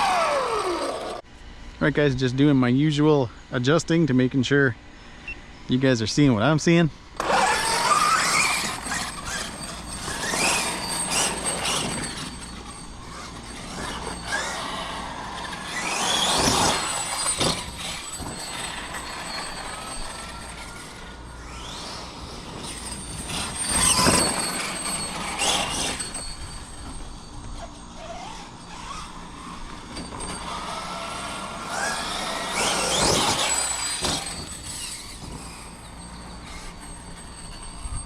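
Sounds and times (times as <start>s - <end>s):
rc truck motor whine: 0.0s - 1.8s, 7.1s - 38.0s
rough driving noise: 5.9s - 38.0s.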